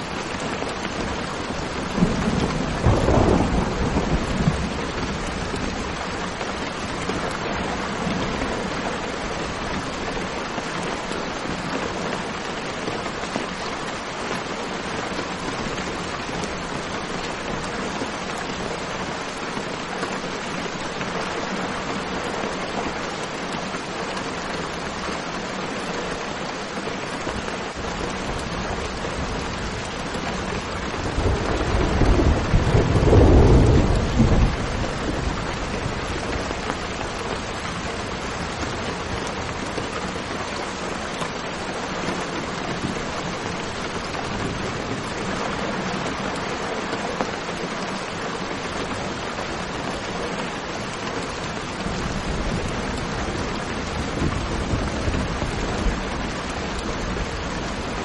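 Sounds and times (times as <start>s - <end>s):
steady rain hissing: 0.0s - 58.0s
thunder rumbling: 1.2s - 8.7s, 29.0s - 38.6s, 51.6s - 58.0s.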